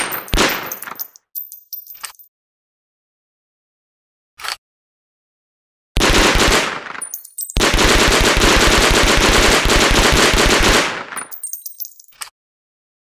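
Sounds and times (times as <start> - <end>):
light metallic tinkling: 0.0 - 2.3, 7.0 - 7.6, 11.2 - 12.2
submachine gun firing bursts: 6.0 - 6.9, 7.6 - 11.1.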